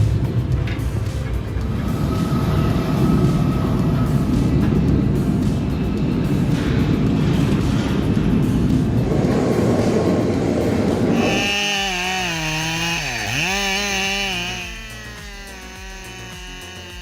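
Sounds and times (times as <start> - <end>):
rough mechanical noise: 0.0 - 17.0
chainsaw running at high revs: 10.9 - 17.0.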